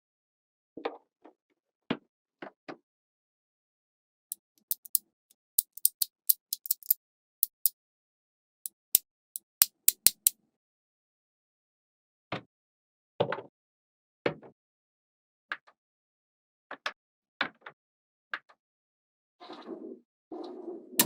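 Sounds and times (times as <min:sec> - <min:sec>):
magnetic balls clicking together: 0:04.3 - 0:05.0, 0:05.6 - 0:07.7, 0:08.7 - 0:10.3.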